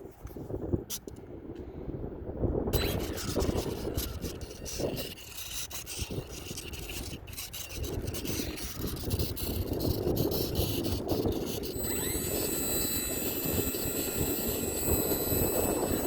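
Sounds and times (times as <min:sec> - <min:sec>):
wind buffeting microphone: 0:00.0 - 0:16.0
rough rubbing noise: 0:02.8 - 0:16.0.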